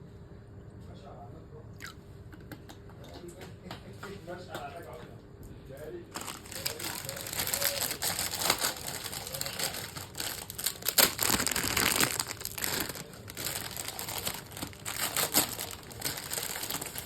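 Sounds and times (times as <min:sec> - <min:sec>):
plastic packaging crinkling: 0:06.1 - 0:17.0.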